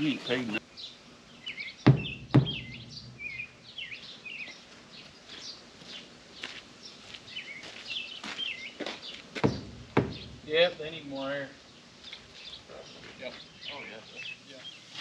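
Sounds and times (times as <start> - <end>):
small birds chirping: 0.0 - 15.0
sharp knocks: 1.9 - 3.4, 9.4 - 10.4.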